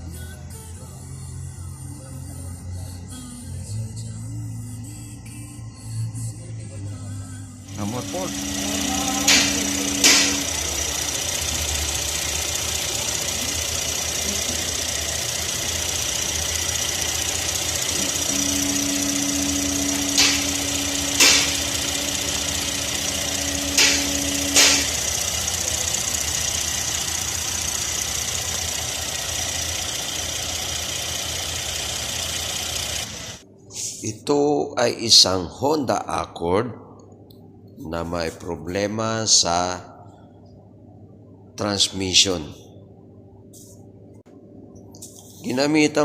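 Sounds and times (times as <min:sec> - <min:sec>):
steady low hum: 0:00.0 - 0:34.4
car engine idling: 0:07.6 - 0:33.4.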